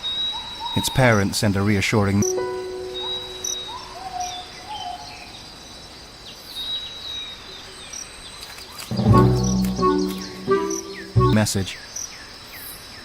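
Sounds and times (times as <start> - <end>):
insects: 0.0 - 8.9, 11.4 - 13.0
faint bird chirps: 2.2 - 5.5.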